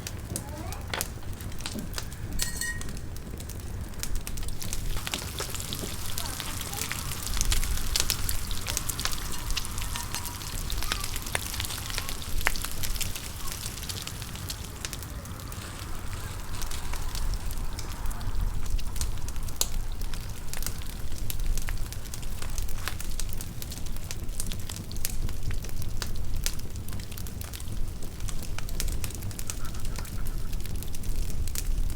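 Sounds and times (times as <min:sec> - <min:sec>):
steady hiss: 0:00.0 - 0:31.9
wood fire crackling and popping: 0:00.0 - 0:31.9
low rumble: 0:01.0 - 0:24.5.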